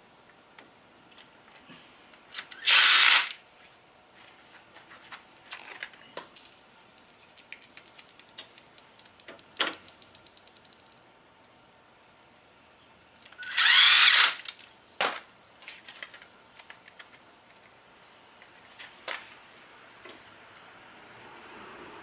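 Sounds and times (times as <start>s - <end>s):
power drill driving bolts: 2.4s - 3.4s, 13.4s - 14.5s
quick evenly spaced clicks: 7.6s - 11.0s.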